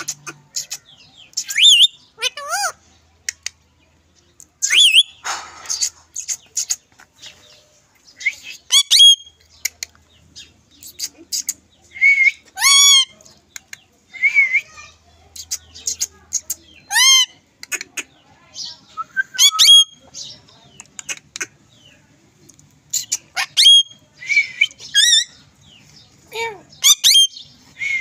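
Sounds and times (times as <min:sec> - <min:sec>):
parrot whistled calls: 0:01.4 - 0:02.0, 0:04.6 - 0:05.2, 0:08.2 - 0:09.3, 0:19.0 - 0:20.0, 0:23.4 - 0:25.3, 0:26.8 - 0:28.0
parrot squawks: 0:08.7 - 0:09.3, 0:12.6 - 0:13.1, 0:22.9 - 0:24.0, 0:26.8 - 0:27.3.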